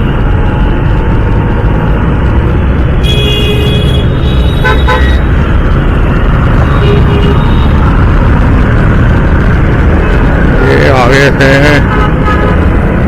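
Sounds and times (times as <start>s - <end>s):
motorcycle engine rumble: 0.0s - 13.0s
vehicle horn honking: 3.0s - 5.2s.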